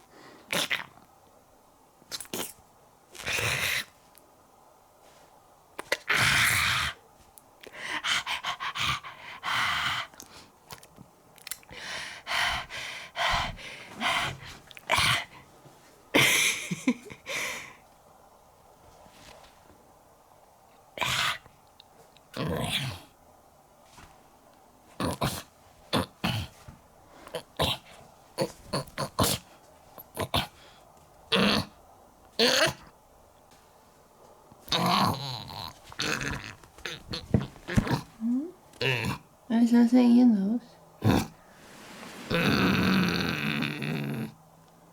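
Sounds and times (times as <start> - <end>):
person making animal-like noises: 0.5 - 1.0, 22.3 - 23.1, 25.0 - 26.6, 27.2 - 30.6, 31.3 - 31.8, 32.4 - 32.9, 34.7 - 39.3, 41.0 - 41.4, 42.3 - 44.4
huffing breaths: 6.0 - 10.6, 11.7 - 17.8
comic snoring: 41.0 - 41.4, 42.2 - 44.4.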